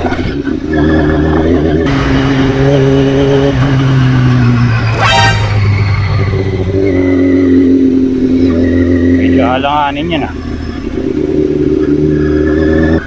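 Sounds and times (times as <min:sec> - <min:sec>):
motorcycle engine running: 0:00.0 - 0:12.4
short horn beep: 0:04.9 - 0:05.9.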